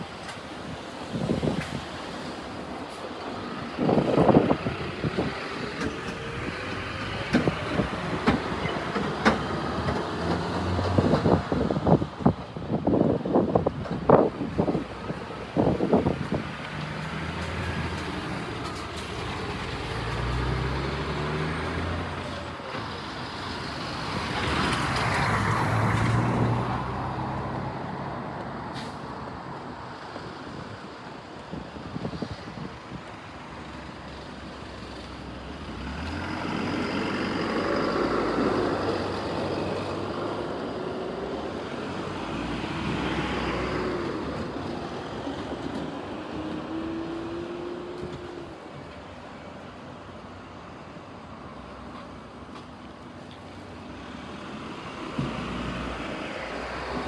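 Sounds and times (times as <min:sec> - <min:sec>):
motor vehicles passing: 0:14.1 - 0:28.1, 0:33.9 - 0:48.9.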